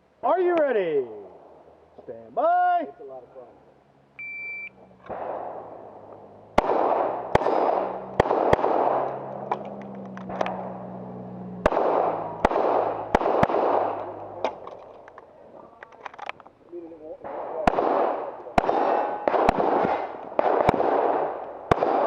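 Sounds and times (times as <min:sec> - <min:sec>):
shot timer beep: 0:04.2 - 0:04.8
handgun shots echoing: 0:05.0 - 0:11.0, 0:11.6 - 0:15.1, 0:17.2 - 0:22.0.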